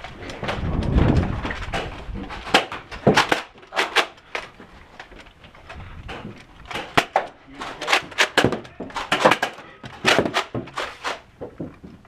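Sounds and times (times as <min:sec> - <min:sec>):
sharp clicks and knocks: 0:00.0 - 0:12.0
rumbling on microphone: 0:00.2 - 0:02.4.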